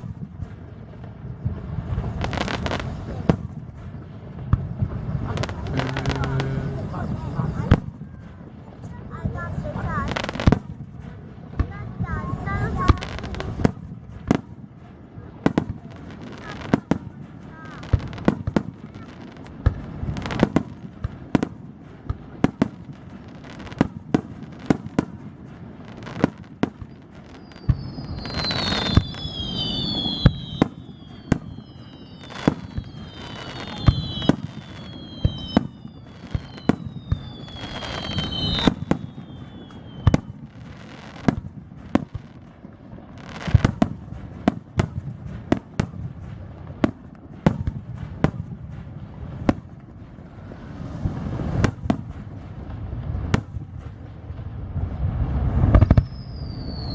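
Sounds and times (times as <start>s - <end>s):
fireworks bangs: 0.0s - 56.9s
fireworks crackling: 0.0s - 56.9s
fireworks whistles falling in pitch: 1.9s - 3.4s, 4.8s - 8.1s, 26.0s - 41.4s, 55.6s - 56.9s.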